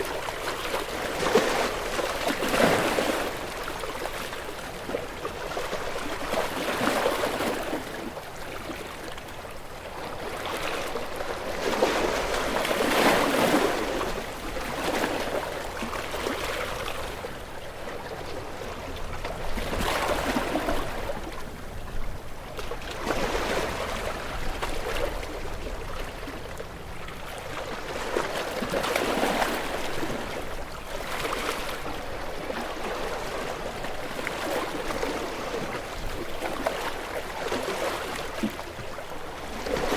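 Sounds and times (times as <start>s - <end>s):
ocean waves washing against rocks: 9.0s - 39.9s.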